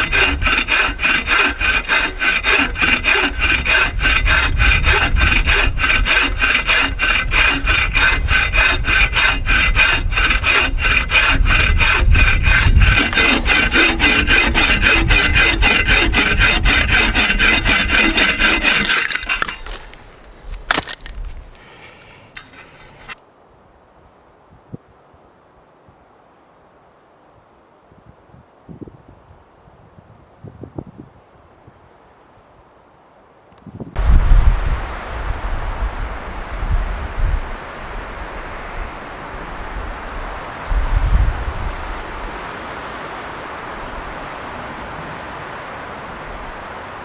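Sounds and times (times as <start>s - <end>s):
hand saw cutting a log: 0.0s - 23.2s
rustling: 0.0s - 23.2s.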